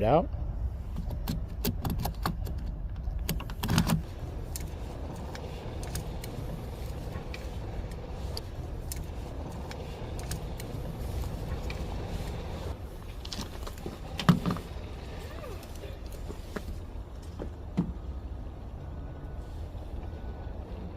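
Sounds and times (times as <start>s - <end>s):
steady low rumble: 2.4s - 20.9s.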